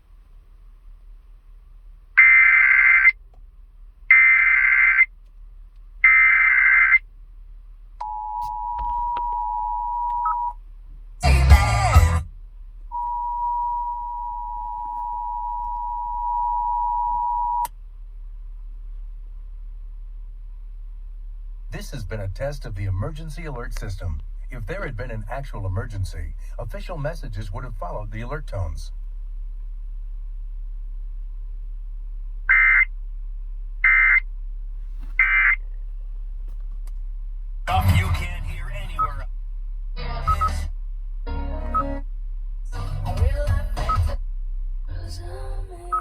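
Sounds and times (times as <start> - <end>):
two-tone alert beep: 8.0 - 10.5, 13.0 - 17.7
click: 8.4 - 10.3, 15.0 - 15.9.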